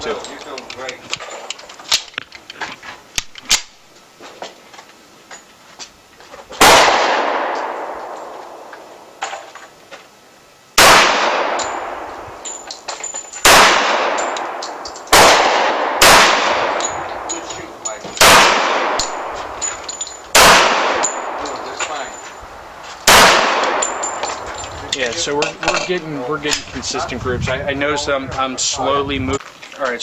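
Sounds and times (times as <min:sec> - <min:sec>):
faint sharp cracks: 0:06.5 - 0:09.7
pistol shots with echo: 0:06.6 - 0:08.8, 0:10.8 - 0:12.2, 0:13.4 - 0:19.5, 0:20.3 - 0:21.6, 0:23.0 - 0:24.2.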